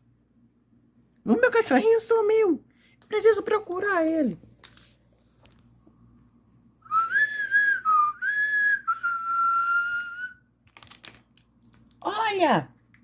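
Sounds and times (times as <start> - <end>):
person whistling: 6.8 - 10.4.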